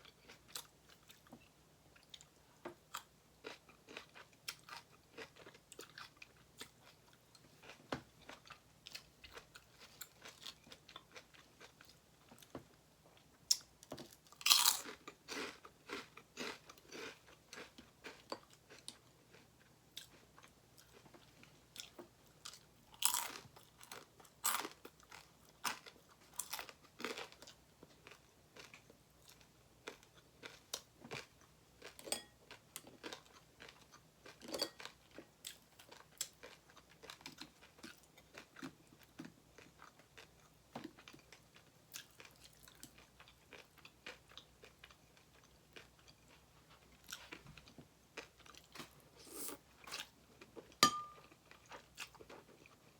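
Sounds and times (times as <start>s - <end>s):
person chewing and crunching: 0.0s - 1.3s, 2.0s - 12.5s, 13.2s - 52.9s.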